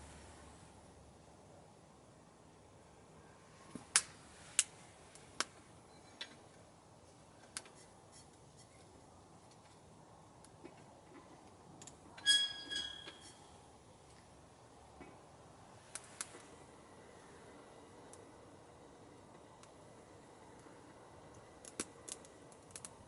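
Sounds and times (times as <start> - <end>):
wood fire crackling and popping: 3.8 - 5.7, 15.9 - 16.5, 21.3 - 23.0
metallic clink ringing: 12.2 - 13.4.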